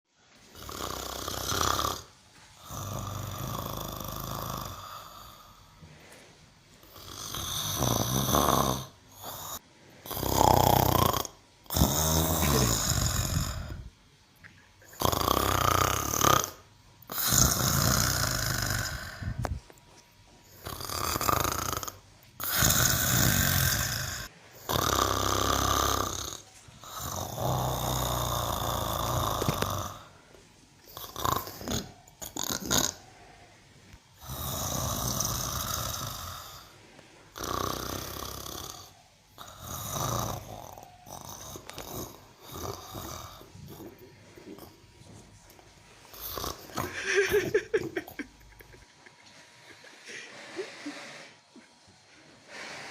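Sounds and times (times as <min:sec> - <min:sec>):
cow snoring: 0:00.5 - 0:05.6, 0:06.8 - 0:13.9, 0:15.0 - 0:19.6, 0:20.5 - 0:30.2, 0:30.9 - 0:33.3, 0:34.2 - 0:44.9, 0:46.1 - 0:47.0.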